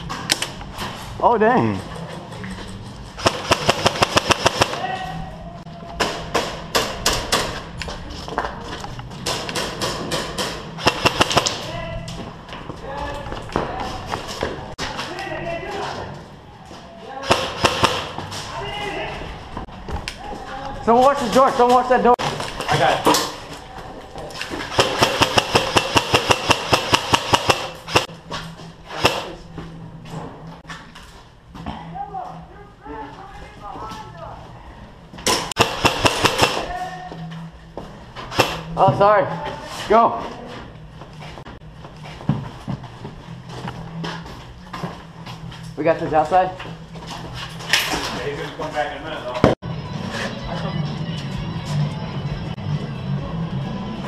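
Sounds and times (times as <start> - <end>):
airsoft gun shots: 3.2 - 4.8, 10.8 - 11.6, 17.3 - 18.2, 24.7 - 28.1, 35.3 - 36.7.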